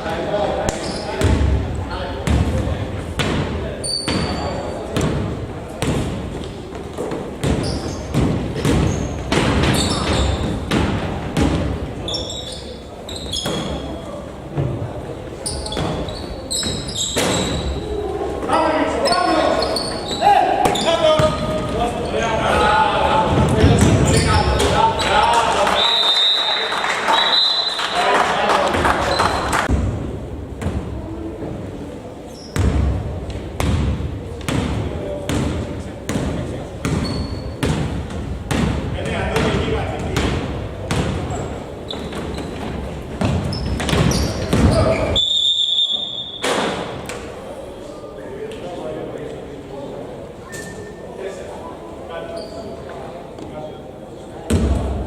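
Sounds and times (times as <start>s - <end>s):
sneakers squeaking on court: 0.7s - 1.4s, 3.8s - 5.2s, 5.8s - 14.2s, 15.4s - 17.9s, 19.0s - 22.2s, 23.6s - 24.8s, 32.3s - 32.9s, 36.1s - 38.7s, 40.9s - 45.2s, 52.4s - 52.8s
basketball bouncing on gym floor: 2.2s - 3.5s, 7.0s - 11.8s, 32.6s - 45.1s, 54.5s - 55.0s.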